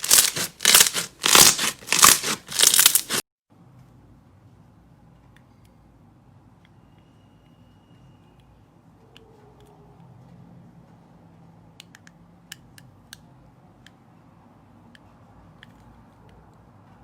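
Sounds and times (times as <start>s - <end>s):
slime being handled: 0.0s - 3.2s.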